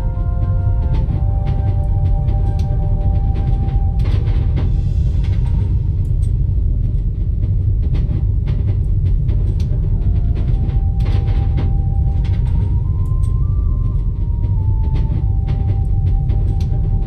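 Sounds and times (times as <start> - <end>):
train rumbling inside carriage: 0.0 - 17.0.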